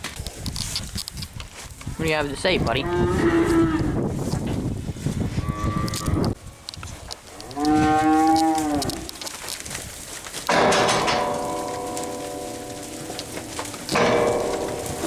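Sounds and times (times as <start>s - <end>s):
cows mooing: 2.8s - 4.0s, 5.4s - 6.4s, 7.3s - 9.2s, 10.5s - 15.0s.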